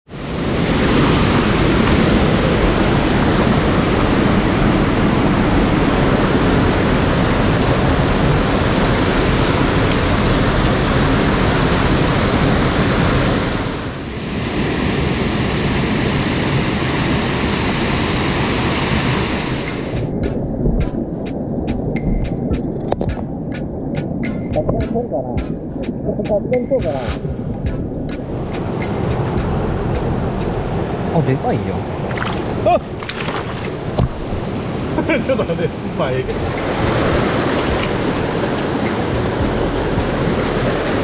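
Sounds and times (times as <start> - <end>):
stream rushing over rocks: 0.1 - 20.6, 28.2 - 41.0
sharp ticks: 19.4 - 30.6, 36.3 - 41.0.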